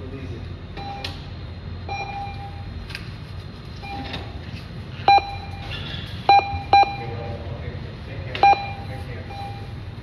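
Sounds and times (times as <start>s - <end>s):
keypad beeps: 5.1s - 5.7s, 6.3s - 7.2s, 8.4s - 9.8s.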